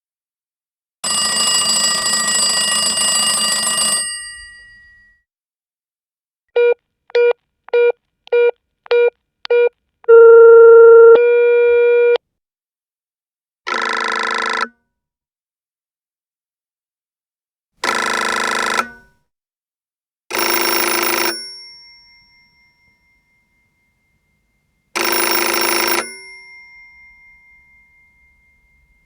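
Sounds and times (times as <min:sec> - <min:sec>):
telephone ringing: 0:01.0 - 0:05.1, 0:20.3 - 0:23.4, 0:25.0 - 0:29.0
phone tone: 0:06.6 - 0:12.2, 0:25.0 - 0:26.2.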